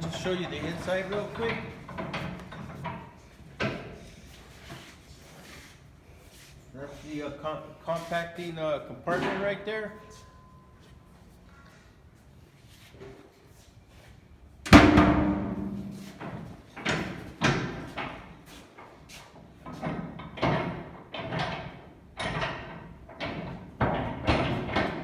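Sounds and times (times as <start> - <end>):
steel door bang: 14.7 - 16.5
latch clanks and knocks: 14.7 - 18.2.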